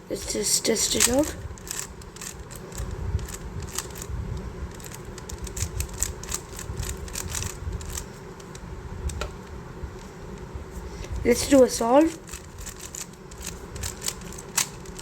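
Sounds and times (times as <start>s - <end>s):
puzzle cube clicking: 0.9s - 4.1s, 4.7s - 9.3s, 12.2s - 15.0s.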